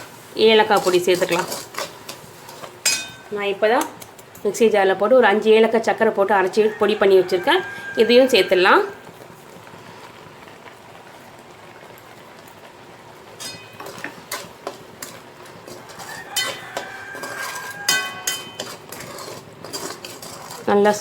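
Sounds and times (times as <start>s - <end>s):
metal spoon scraping a pan: 0.0s - 3.4s, 13.4s - 21.0s.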